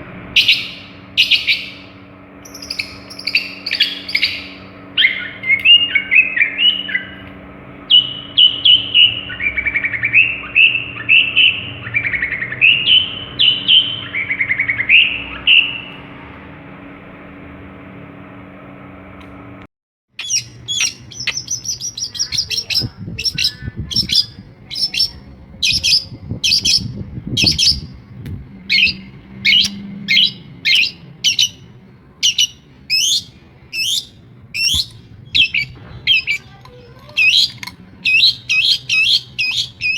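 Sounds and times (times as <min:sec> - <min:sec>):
steady low hum: 0:00.0 - 0:39.9
sharp repeated high bird notes: 0:00.4 - 0:07.2, 0:07.9 - 0:15.9
shrike singing mimicked phrases: 0:20.2 - 0:27.8, 0:30.2 - 0:39.9.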